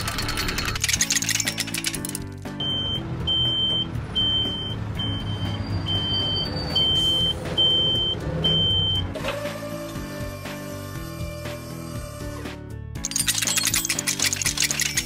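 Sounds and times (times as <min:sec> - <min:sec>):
high electronic beeps: 0:02.6 - 0:09.0.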